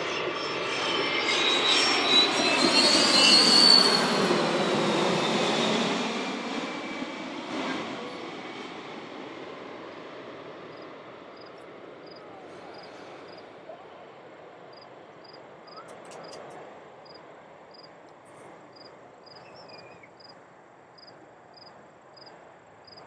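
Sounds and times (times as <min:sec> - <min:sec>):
crickets chirping: 0:10.6 - 0:13.5, 0:14.7 - 0:18.0, 0:18.7 - 0:20.4, 0:21.0 - 0:23.0.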